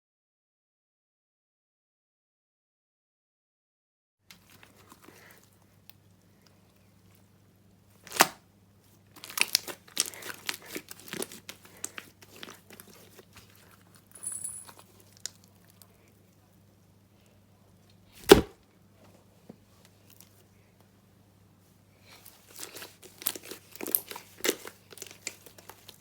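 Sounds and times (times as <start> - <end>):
sticky crackling and popping: 9.1 - 13.6, 22.5 - 26.0
slime squished and pulled: 22.5 - 25.9.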